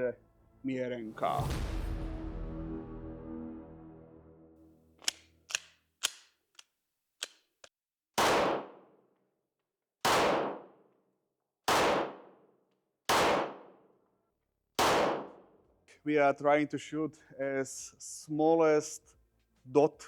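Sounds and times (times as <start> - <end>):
music: 0.0 - 5.0
sharp clicks: 5.0 - 7.8
pistol shots ringing: 8.2 - 8.8, 10.1 - 10.7, 11.7 - 12.3, 13.1 - 13.7, 14.8 - 15.4.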